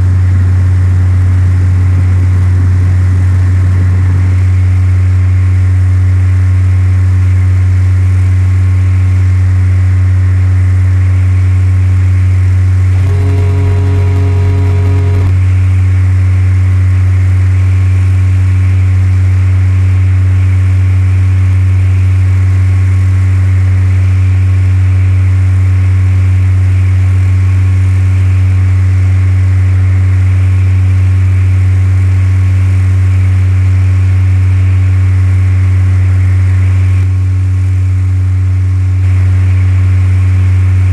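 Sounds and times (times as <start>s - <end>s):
propeller plane engine drone: 0.0s - 6.5s, 12.6s - 15.5s
pitched tone: 12.9s - 15.4s.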